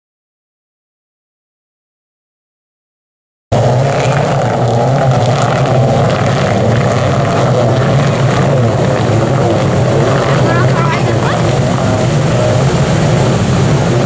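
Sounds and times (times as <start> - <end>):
jet-ski engines droning: 3.5 - 14.0.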